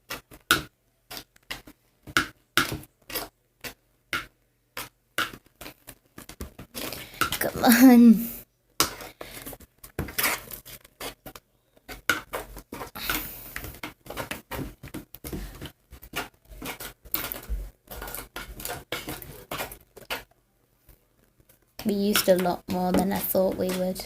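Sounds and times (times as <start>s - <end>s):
utensil scraping in a bowl: 8.8s - 11.3s, 15.5s - 20.2s, 21.8s - 24.0s.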